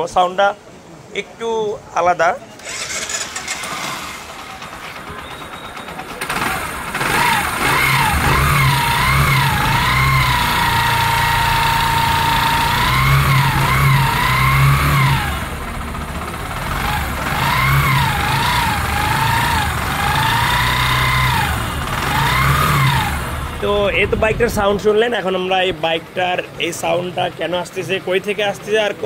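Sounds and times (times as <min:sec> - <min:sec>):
motorcycle engine revving: 0:02.6 - 0:24.1
engine whine: 0:02.6 - 0:24.9.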